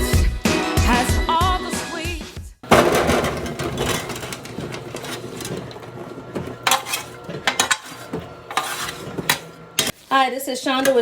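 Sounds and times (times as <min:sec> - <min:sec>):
utensil scraping and clinking pan: 0:02.7 - 0:11.0.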